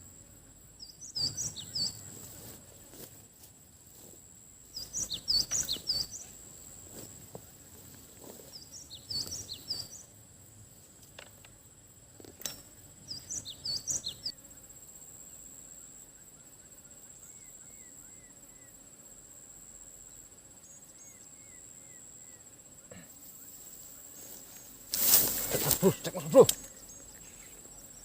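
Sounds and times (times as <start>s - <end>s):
high-pitched insect drone: 0.0s - 3.2s, 3.9s - 10.6s
birds chirping: 0.8s - 2.1s, 4.7s - 6.4s, 8.4s - 10.1s, 13.1s - 14.3s.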